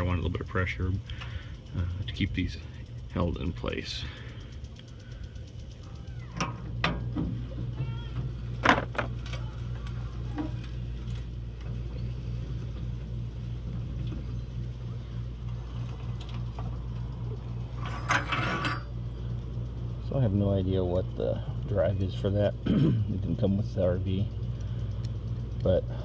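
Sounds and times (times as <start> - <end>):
steady low hum: 0.0 - 26.0
metal rattle: 2.1 - 11.9, 15.4 - 19.1.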